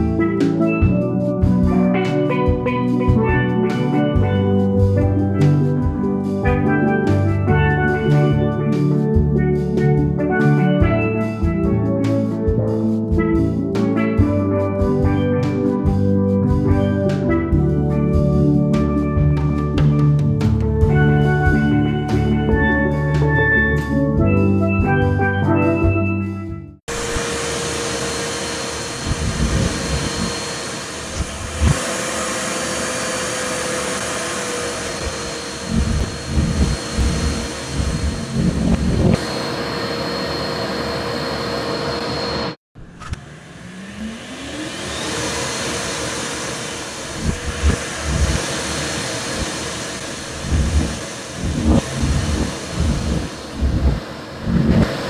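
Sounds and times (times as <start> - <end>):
shop vac motor whining: 26.9 - 55.0.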